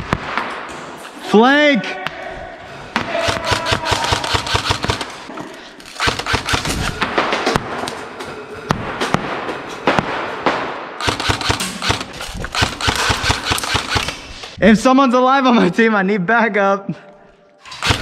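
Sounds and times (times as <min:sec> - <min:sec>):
airsoft guns firing: 0:03.0 - 0:05.3, 0:05.9 - 0:07.8, 0:09.1 - 0:14.5, 0:17.7 - 0:18.0.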